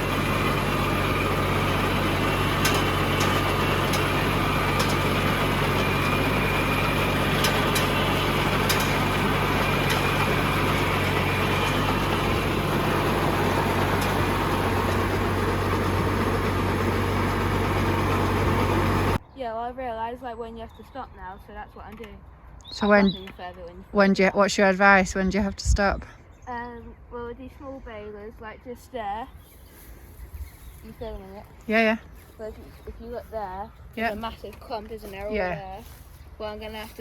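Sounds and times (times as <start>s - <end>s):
tractor engine running: 0.0s - 19.2s, 29.7s - 37.0s
sharp machinery clicks: 1.9s - 16.9s.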